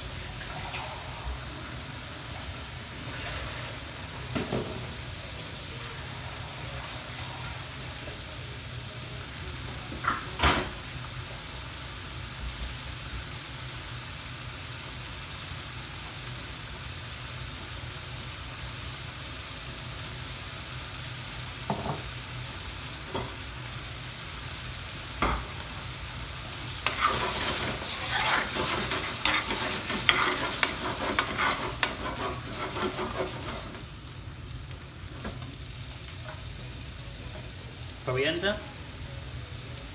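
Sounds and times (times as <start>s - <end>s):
curry sizzling in a pan: 0.0s - 39.9s
spoon scraping and clicking in pan: 26.8s - 33.8s.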